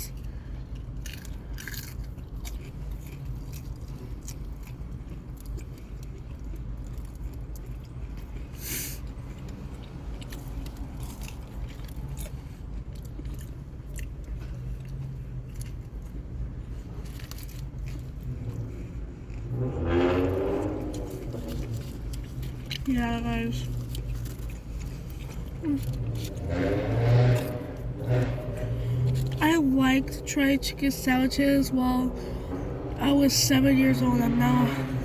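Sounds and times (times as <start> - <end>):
person chewing food: 0.1 - 19.5, 21.0 - 22.9, 23.6 - 29.4.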